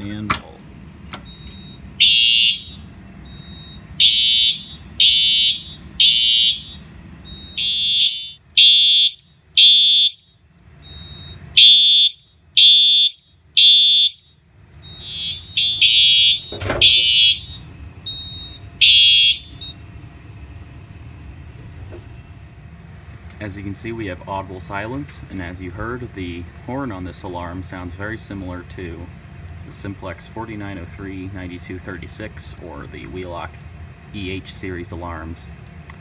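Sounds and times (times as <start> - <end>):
high-pitched electronic horn blasts: 2.0 - 10.4, 11.0 - 19.7.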